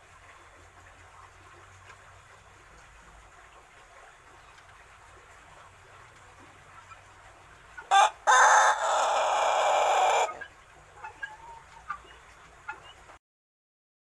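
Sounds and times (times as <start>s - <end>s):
young rooster crowing: 7.9s - 10.4s.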